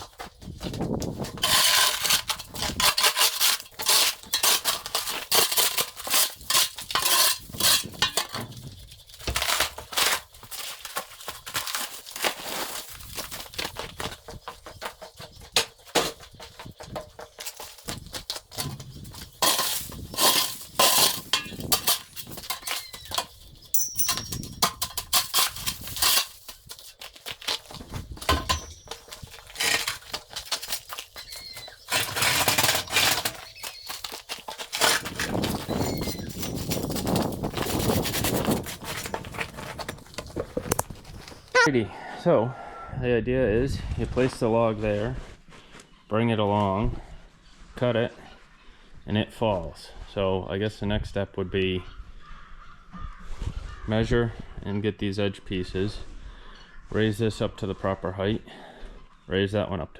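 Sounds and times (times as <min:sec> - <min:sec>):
clinks and knocks of hard parts: 0:01.2 - 0:41.7.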